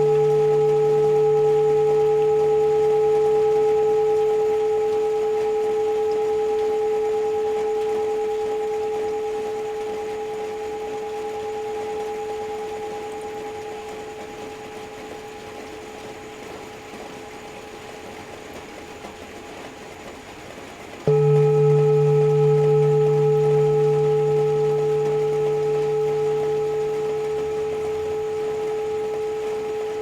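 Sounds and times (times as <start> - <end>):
singing bowl ringing: 0.0 - 17.5, 21.1 - 30.0
deeper singing bowl tone: 0.0 - 17.7, 21.1 - 30.0
rain hiss: 7.7 - 30.0.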